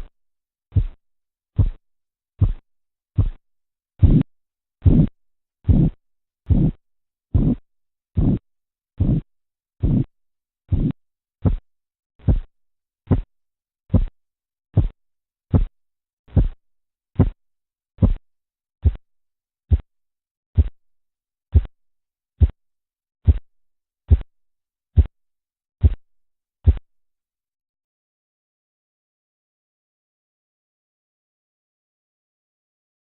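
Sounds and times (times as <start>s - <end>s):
pulse beat thumps: 0.7s - 1.0s, 1.6s - 1.8s, 2.4s - 2.6s, 3.2s - 3.4s, 4.0s - 5.1s, 5.7s - 7.6s, 8.2s - 8.4s, 9.0s - 10.1s, 10.7s - 11.6s, 12.2s - 12.5s, 13.1s - 13.3s, 13.9s - 14.1s, 14.8s - 15.7s, 16.3s - 16.6s, 17.2s - 17.4s, 18.0s - 18.2s, 20.6s - 20.8s, 21.5s - 21.7s, 23.2s - 23.4s, 24.1s - 24.3s.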